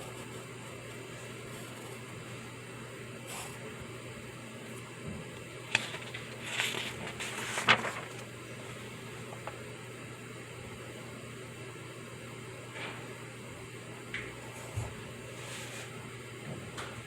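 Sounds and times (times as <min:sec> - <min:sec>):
room hum: 0:00.0 - 0:17.0
paper rustling: 0:05.5 - 0:09.8.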